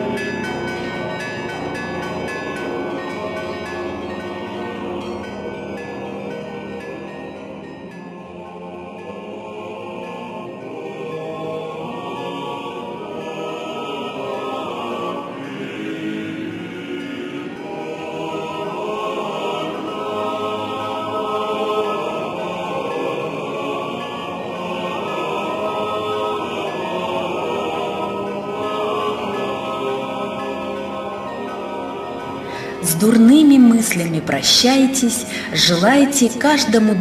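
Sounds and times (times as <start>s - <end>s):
choir singing chant: 0.0s - 37.0s.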